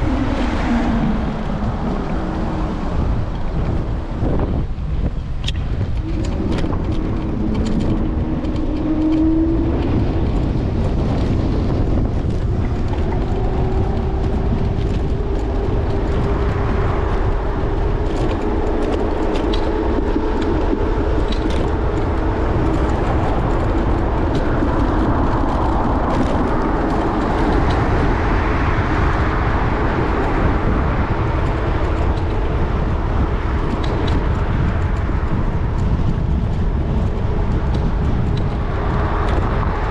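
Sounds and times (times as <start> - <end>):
cars passing: 0.0 - 39.9
rattles and clicks: 0.0 - 39.9
wind and road rumble: 0.0 - 39.9
humming tone: 5.5 - 34.6.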